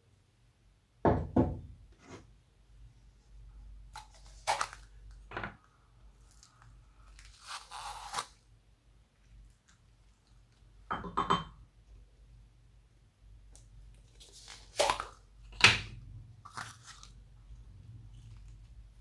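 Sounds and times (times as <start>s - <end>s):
slime rustling: 3.9s - 5.0s.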